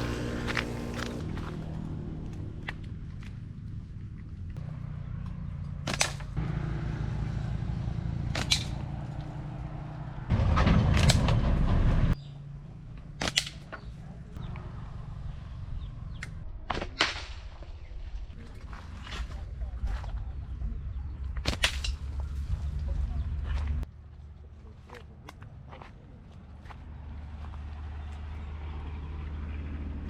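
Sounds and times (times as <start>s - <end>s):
sharp cracks: 5.7s - 6.4s, 8.2s - 9.4s, 13.0s - 14.7s, 16.1s - 17.8s, 21.4s - 22.2s.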